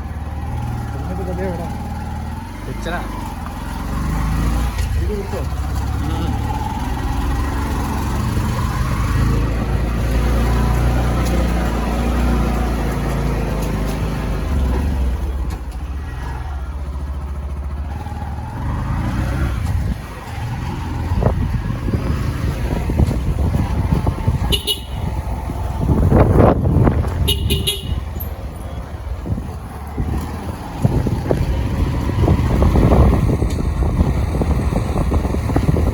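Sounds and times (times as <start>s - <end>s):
motorbike engine rumble: 0.0s - 35.9s
traffic: 0.0s - 35.9s
wind noise: 19.0s - 35.9s
vehicle horn toot: 24.5s - 25.2s, 27.2s - 28.2s.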